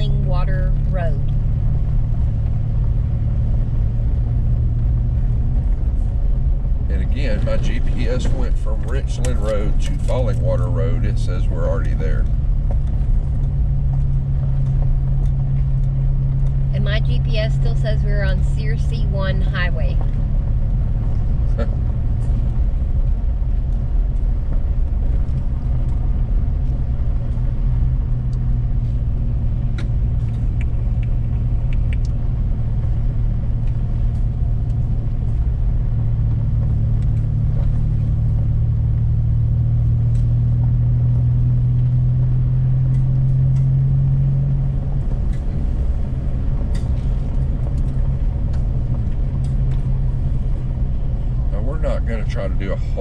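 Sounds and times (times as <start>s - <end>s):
engine and road drone: 0.0s - 53.0s
light ticks: 29.7s - 32.2s.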